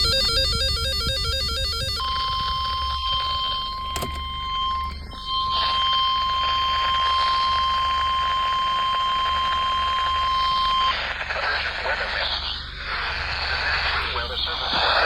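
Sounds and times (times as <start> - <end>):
steady high alarm tone: 0.0 - 11.1
radio static hiss: 10.9 - 15.0.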